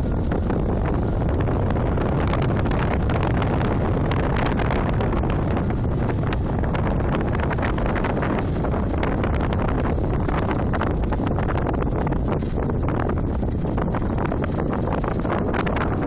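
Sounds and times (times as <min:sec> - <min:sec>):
low rumble: 0:00.0 - 0:16.0.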